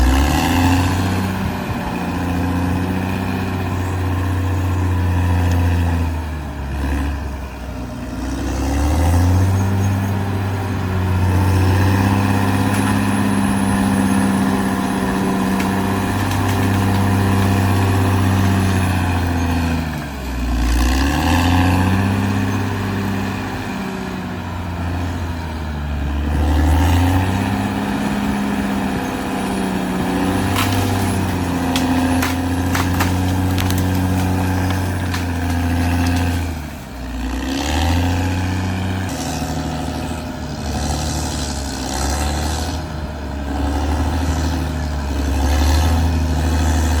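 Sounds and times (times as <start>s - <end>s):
bulldozer diesel engine: 0.0s - 47.0s
metal clanks: 30.4s - 36.4s.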